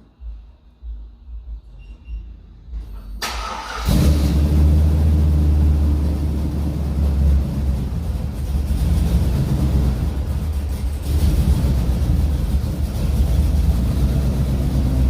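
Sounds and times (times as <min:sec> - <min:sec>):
engine idling: 0:03.2 - 0:15.0.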